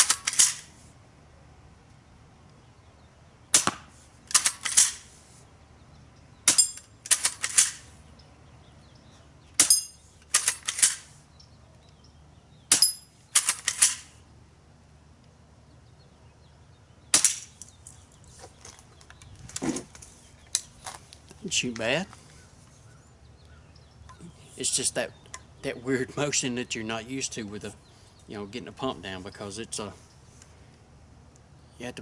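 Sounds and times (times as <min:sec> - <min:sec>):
bb rifle shots: 0:03.5 - 0:05.0, 0:06.4 - 0:07.9, 0:12.7 - 0:14.1, 0:17.1 - 0:17.6.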